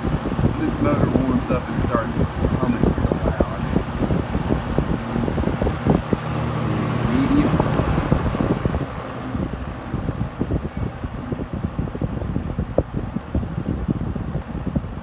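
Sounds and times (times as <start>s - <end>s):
box fan running: 0.0s - 15.0s
wind buffeting microphone: 0.0s - 15.0s.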